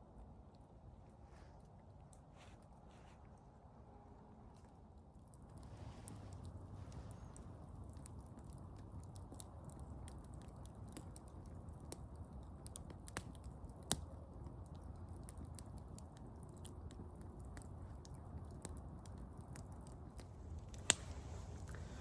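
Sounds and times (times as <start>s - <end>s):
campfire crackling: 4.5s - 22.0s
sharp fire pops: 20.6s - 22.0s.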